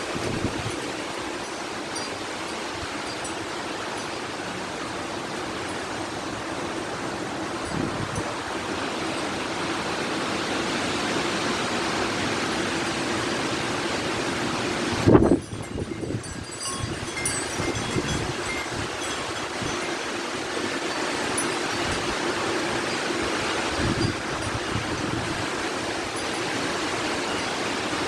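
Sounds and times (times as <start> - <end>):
strong wind blowing: 0.0 - 27.2.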